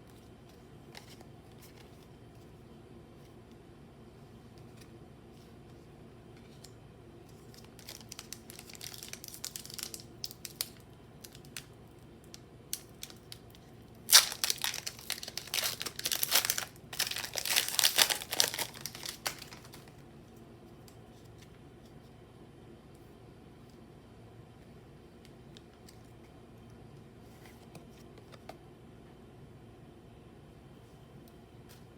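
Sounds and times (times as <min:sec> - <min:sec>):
foil wrapper tearing and crinkling: 0:07.5 - 0:11.7, 0:12.7 - 0:13.4, 0:14.0 - 0:20.0.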